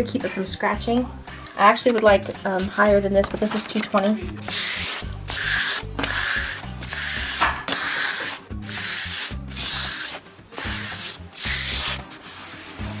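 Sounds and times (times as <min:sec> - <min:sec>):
sandpaper rubbing on wet surface: 0:04.4 - 0:13.0.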